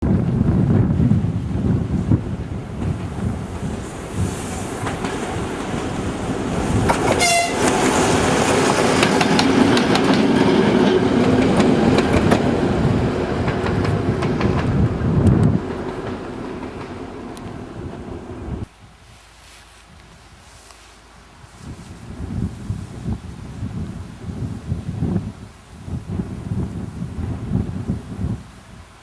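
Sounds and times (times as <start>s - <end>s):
wheels clicking over rail joints: 2.4s - 18.4s
train horn blast: 6.8s - 8.2s.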